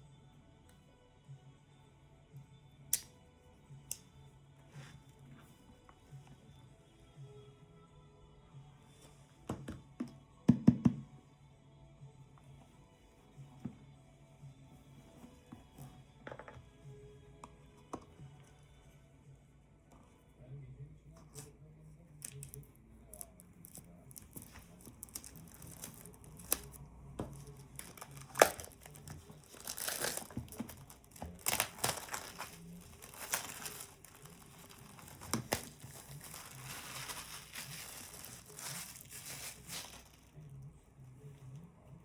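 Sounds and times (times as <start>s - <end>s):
packaging crinkling and tearing: 22.2s - 40.3s.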